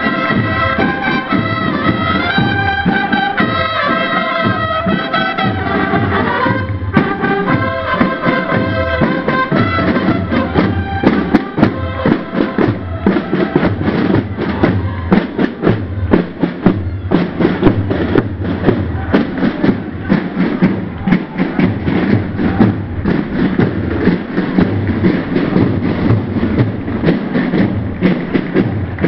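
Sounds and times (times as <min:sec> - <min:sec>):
brass sustained notes: 0:00.0 - 0:13.6
marching drum beat: 0:00.0 - 0:29.0.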